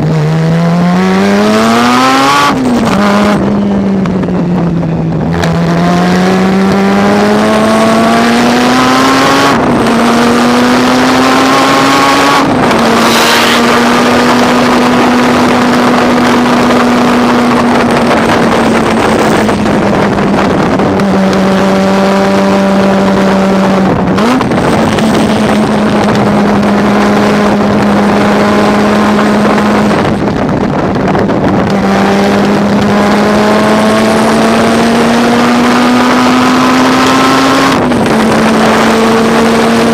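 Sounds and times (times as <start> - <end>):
rotary engine racing under load: 5.2 - 39.9.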